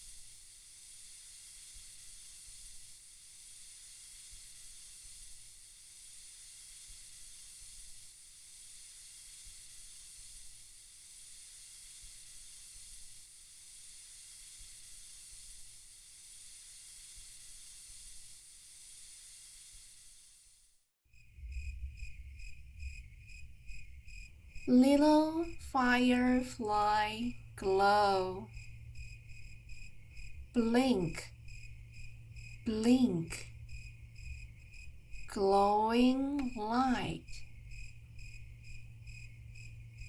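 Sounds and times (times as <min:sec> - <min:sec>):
white noise hiss: 0:00.0 - 0:20.8, 0:22.6 - 0:40.0
crickets chirping: 0:21.1 - 0:35.4, 0:36.0 - 0:40.0.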